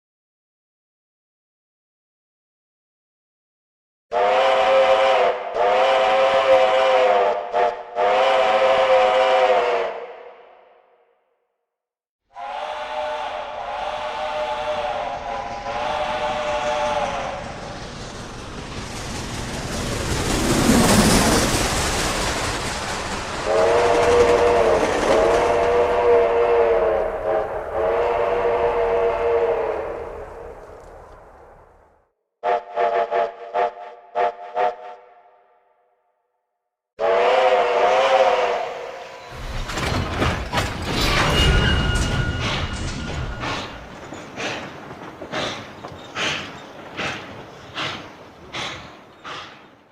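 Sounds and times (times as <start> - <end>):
steam locomotive chime whistle: 4.1 - 10.0, 12.4 - 17.4, 23.5 - 30.2, 37.0 - 39.4, 41.1 - 43.9
moving train rushing: 4.2 - 10.4, 12.3 - 35.1, 37.0 - 49.9.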